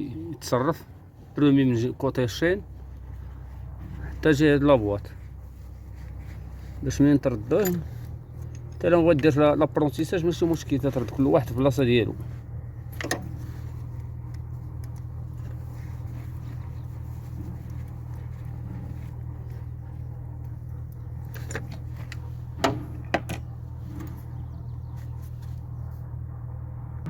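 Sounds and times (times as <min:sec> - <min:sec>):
low machine hum: 0:00.0 - 0:27.0
metallic clinks of hand tools: 0:07.4 - 0:09.0.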